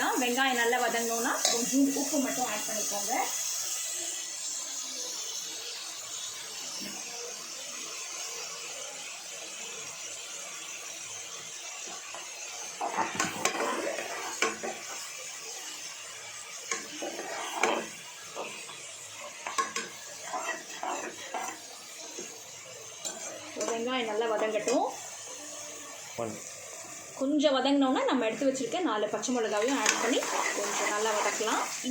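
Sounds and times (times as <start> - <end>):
spoon scraping a pan: 0.0 - 3.4, 11.8 - 27.0, 29.2 - 31.9
onions sizzling in oil: 0.0 - 31.9.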